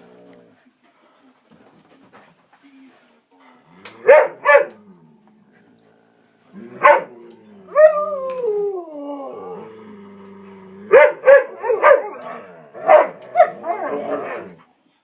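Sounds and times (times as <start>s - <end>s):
dogs barking: 4.0s - 4.8s, 6.7s - 7.9s, 10.9s - 14.6s
dog howling: 6.5s - 14.6s.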